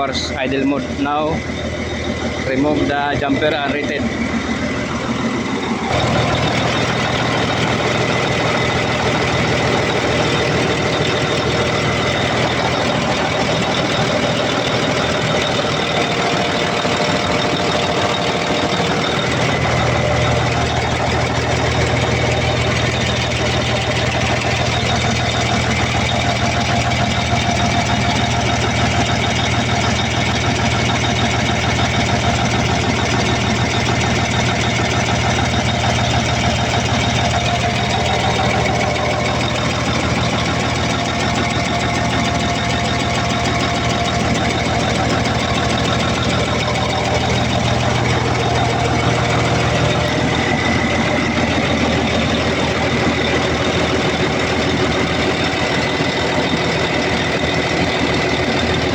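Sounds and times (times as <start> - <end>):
diesel engine idling: 0.0 - 58.9.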